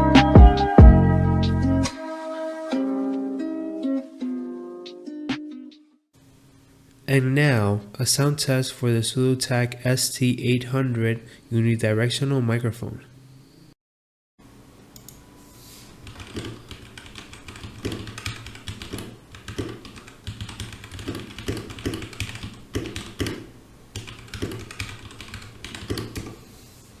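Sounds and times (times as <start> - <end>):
keyboard typing: 16.0 - 26.4.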